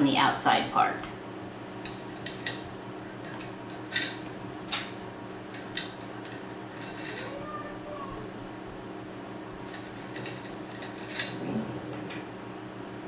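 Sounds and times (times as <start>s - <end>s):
metal nuts clinking on aluminium: 3.2s - 4.9s, 5.5s - 7.4s, 9.7s - 11.4s.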